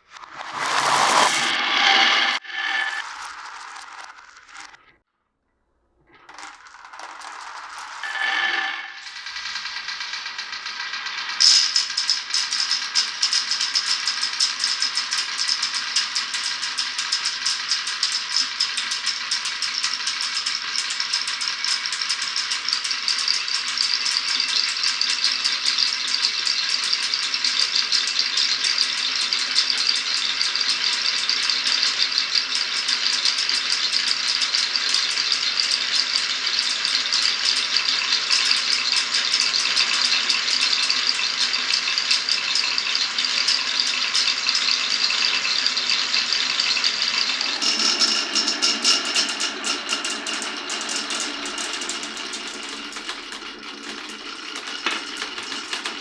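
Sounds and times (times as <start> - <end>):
glass marbles clattering on marble run: 0.2 - 4.8, 6.1 - 56.0.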